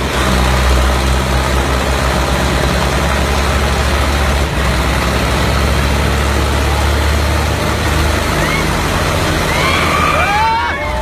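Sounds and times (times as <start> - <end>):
diesel tractor engine drone: 0.0 - 11.0.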